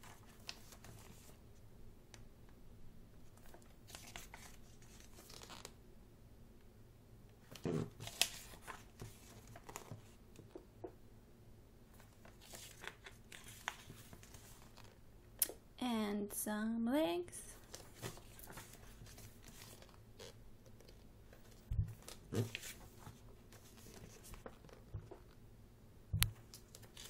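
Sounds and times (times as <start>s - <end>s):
book pages turning: 0.0s - 1.4s, 3.3s - 5.8s, 7.5s - 10.5s, 12.0s - 15.0s, 17.6s - 25.4s, 26.2s - 27.0s.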